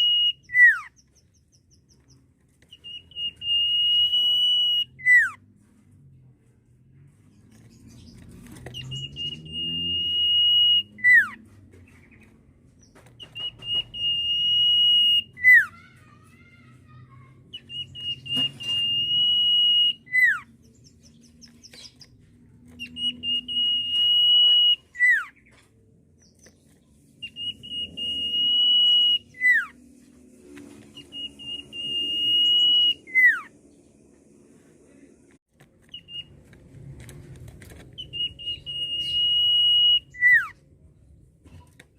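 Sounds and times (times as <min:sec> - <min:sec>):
bird whistling song: 0:00.0 - 0:05.4, 0:07.8 - 0:12.3, 0:12.9 - 0:15.7, 0:17.5 - 0:25.6, 0:26.2 - 0:30.0, 0:30.6 - 0:33.6, 0:35.9 - 0:36.4, 0:38.0 - 0:40.6.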